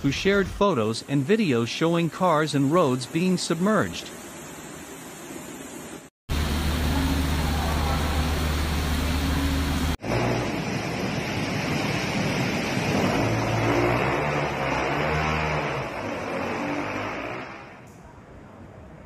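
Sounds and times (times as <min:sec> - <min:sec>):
heavy rain hissing: 0:00.0 - 0:17.8
car engines running: 0:06.3 - 0:10.4.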